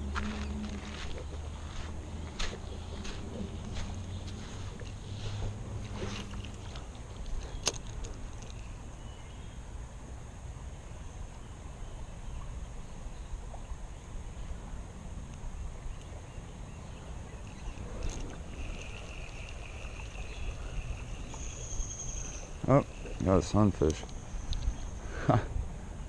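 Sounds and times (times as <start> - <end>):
flowing water: 0.0 - 9.0, 12.4 - 25.4
insect or bird call: 0.0 - 26.0
wind: 0.0 - 26.0
high insect drone: 16.7 - 26.0.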